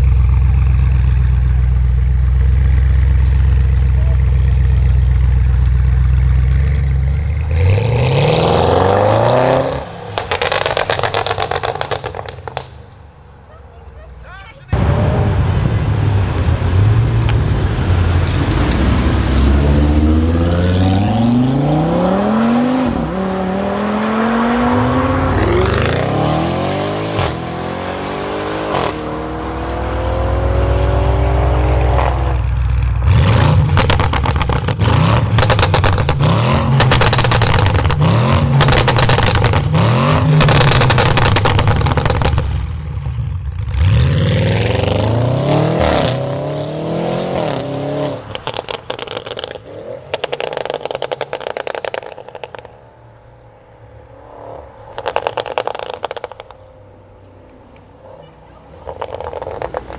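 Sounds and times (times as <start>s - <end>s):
exhaust crackles and pops: 0.0s - 7.8s, 9.6s - 13.1s, 30.9s - 43.8s, 48.2s - 52.8s, 54.8s - 57.9s, 58.7s - 59.9s
car engine revving: 0.0s - 13.5s, 14.7s - 52.8s, 58.0s - 59.9s.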